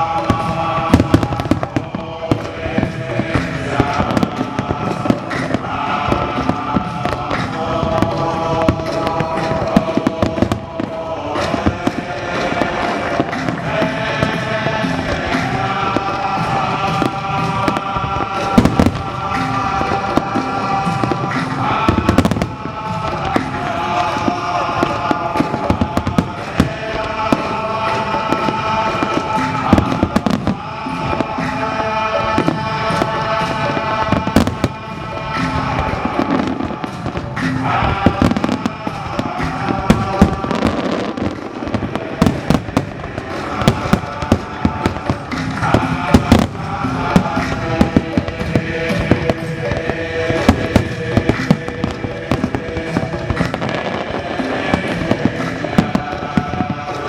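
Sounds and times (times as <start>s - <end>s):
fireworks bangs and crackles: 0.0s - 57.0s
melodic music playing: 14.5s - 37.4s.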